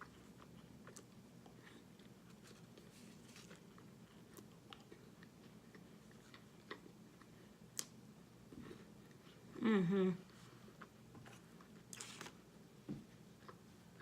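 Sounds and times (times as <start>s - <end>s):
chewing and crunching: 0.0s - 8.0s.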